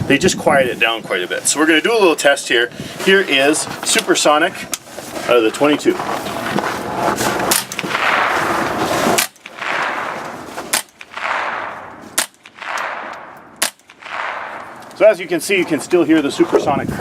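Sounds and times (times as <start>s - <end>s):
suppressed gunshots cracking: 7.5s - 15.1s.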